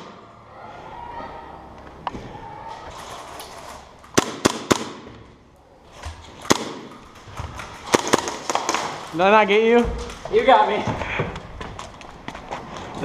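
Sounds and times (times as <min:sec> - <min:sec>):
airsoft guns firing: 0:04.1 - 0:05.3, 0:06.4 - 0:07.2, 0:07.8 - 0:09.1.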